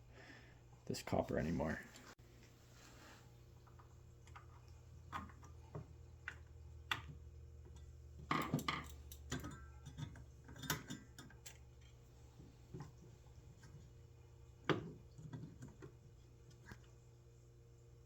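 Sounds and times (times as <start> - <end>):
low steady hum: 0.0 - 18.0
hand tools clicking and tapping: 5.1 - 11.6.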